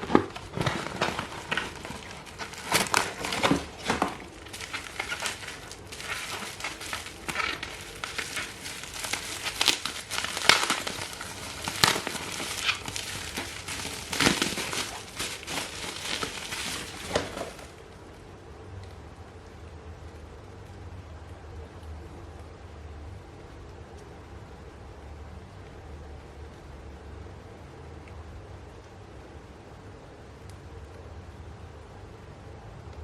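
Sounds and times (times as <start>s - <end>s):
packaging crinkling: 0.0s - 17.9s.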